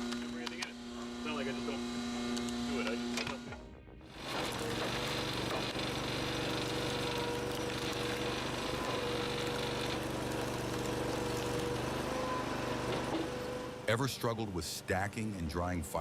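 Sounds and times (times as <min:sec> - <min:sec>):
engine running with hum and whine: 0:04.2 - 0:13.9.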